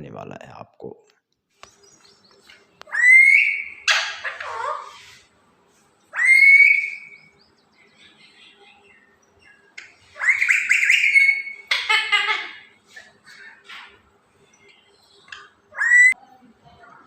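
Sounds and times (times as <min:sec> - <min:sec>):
parrot calling: 0:02.8 - 0:05.3, 0:06.1 - 0:07.3, 0:10.0 - 0:14.0, 0:15.3 - 0:16.2.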